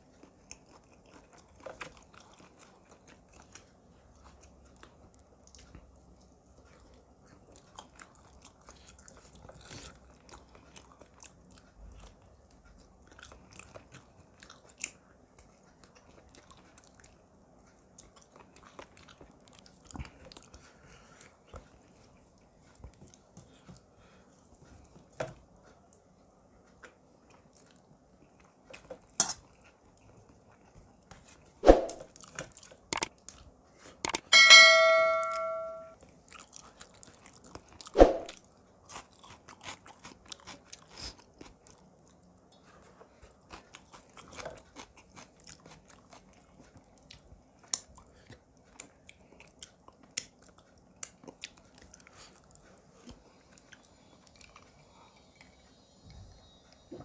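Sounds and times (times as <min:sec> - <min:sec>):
person chewing: 0:00.0 - 0:25.2, 0:36.0 - 0:55.6
dish struck and ringing: 0:34.3 - 0:36.0.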